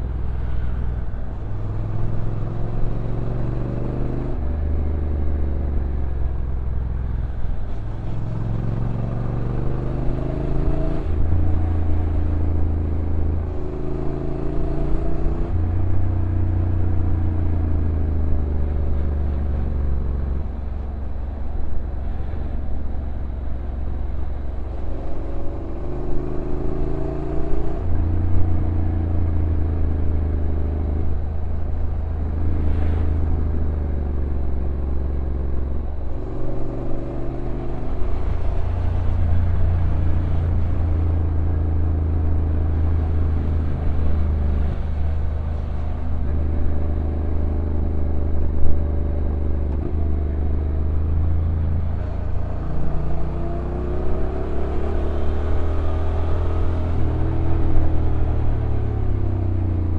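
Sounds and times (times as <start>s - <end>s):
motorcycle engine shifting gears: 7.2s - 59.9s.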